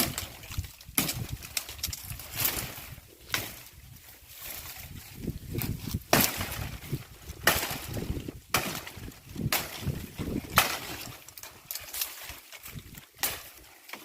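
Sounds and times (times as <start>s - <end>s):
chopping blows on tree trunk: 0.0s - 1.6s, 5.6s - 6.8s, 7.4s - 11.1s
rustling: 0.0s - 14.0s.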